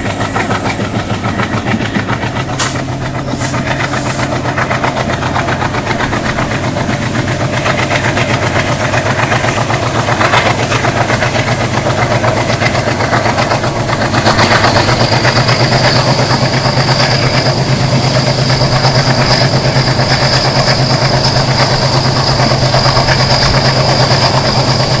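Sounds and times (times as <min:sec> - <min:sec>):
diesel locomotive engines chugging: 0:00.0 - 0:25.0
high turbocharger whistle: 0:14.1 - 0:25.0
lower whistle: 0:14.4 - 0:25.0.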